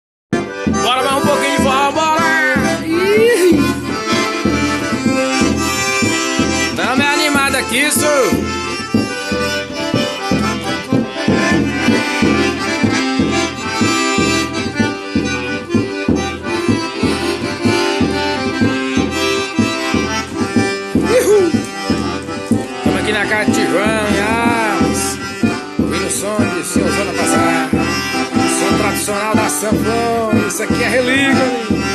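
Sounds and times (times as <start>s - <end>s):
accordion playing a tune: 0.3s - 31.9s.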